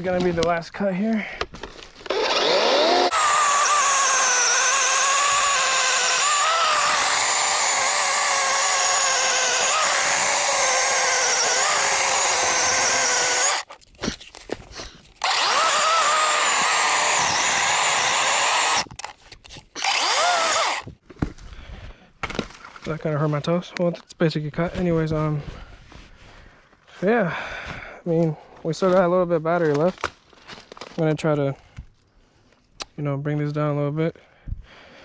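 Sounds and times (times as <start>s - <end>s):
electric chainsaw cutting log: 2.0s - 13.7s, 15.2s - 19.0s, 19.8s - 20.9s.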